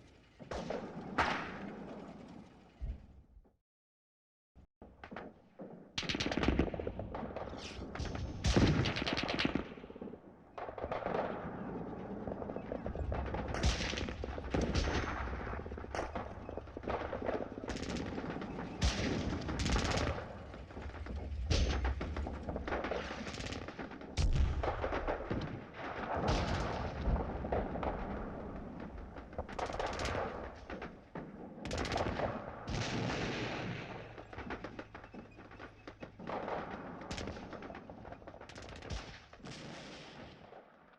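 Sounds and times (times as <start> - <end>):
machine-gun fire: 13.1 - 25.4.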